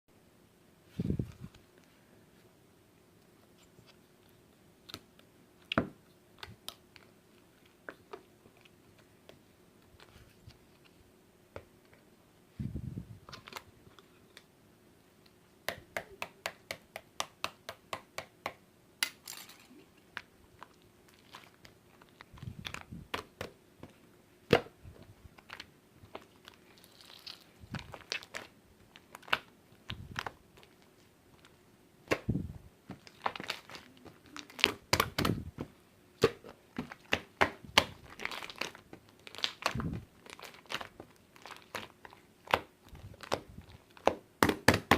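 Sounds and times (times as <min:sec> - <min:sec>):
crinkling: 0:19.2 - 0:24.1, 0:24.8 - 0:44.9.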